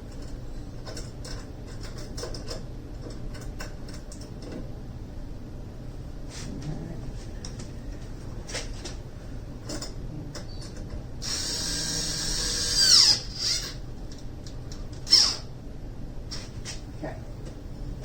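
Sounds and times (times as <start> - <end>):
power driver whining: 11.2 - 13.9, 15.0 - 15.5.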